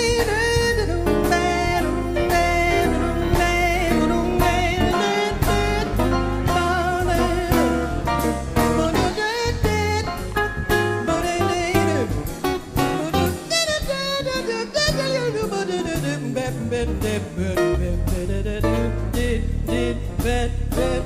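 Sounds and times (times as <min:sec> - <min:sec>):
woman singing: 0:00.0 - 0:08.0, 0:08.6 - 0:10.2, 0:12.9 - 0:18.9
drums: 0:00.0 - 0:21.0
jazz band playing: 0:00.0 - 0:21.0
walking bass line: 0:00.0 - 0:21.0.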